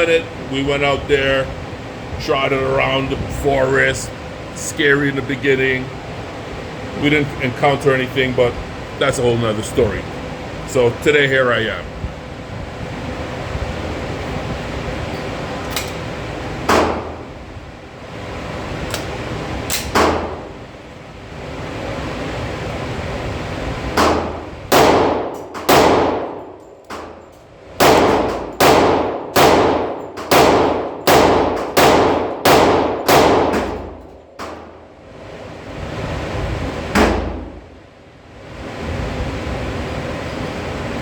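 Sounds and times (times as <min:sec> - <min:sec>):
pistol shots echoing indoors: 0:16.7 - 0:17.2, 0:19.7 - 0:20.5, 0:24.0 - 0:27.2, 0:27.8 - 0:34.8.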